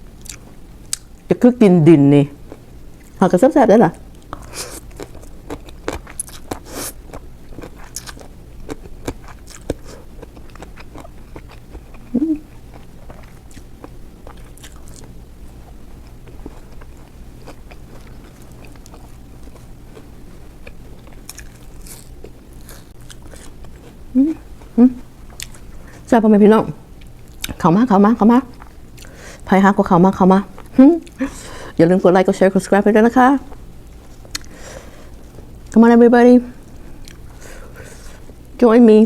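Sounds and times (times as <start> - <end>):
person chewing crunchy food: 0.2 - 1.2, 4.1 - 26.1, 28.5 - 29.2, 33.5 - 35.8, 36.6 - 38.5.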